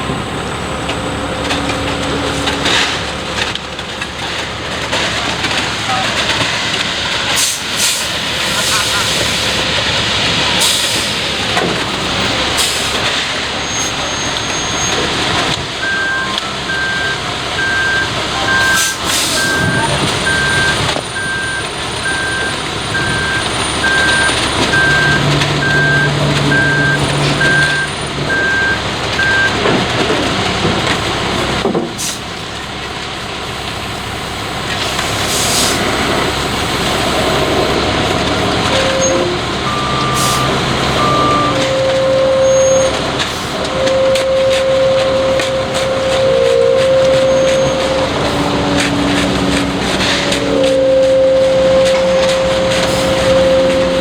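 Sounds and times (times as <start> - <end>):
diesel truck engine running: 0.0 - 54.0
air brake hisses: 7.4 - 9.6, 32.0 - 32.3, 34.8 - 35.9, 40.2 - 40.5
reversing alarm beeping: 15.8 - 29.7, 38.6 - 43.1, 43.7 - 54.0.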